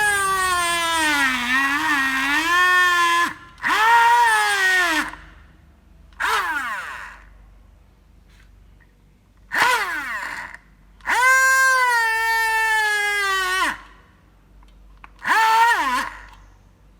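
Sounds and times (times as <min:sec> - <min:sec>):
small electric motor whining: 0:00.0 - 0:05.2, 0:06.2 - 0:07.3, 0:09.5 - 0:14.0, 0:15.2 - 0:16.4.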